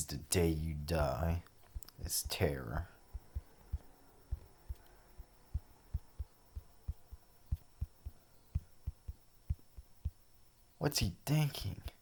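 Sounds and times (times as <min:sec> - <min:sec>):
heartbeat thumps: 0:01.8 - 0:10.3.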